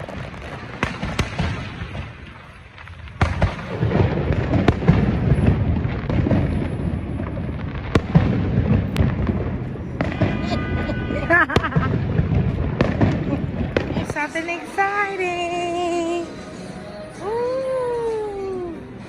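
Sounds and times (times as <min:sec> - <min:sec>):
firework bangs: 0:00.0 - 0:15.1
fireworks crackling rumble: 0:00.0 - 0:19.0.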